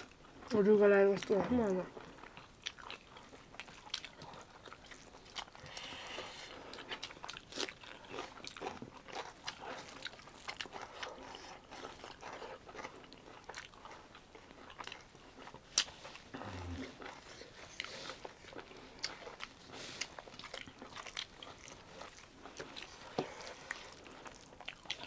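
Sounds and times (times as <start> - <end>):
person chewing food: 1.2 - 25.0.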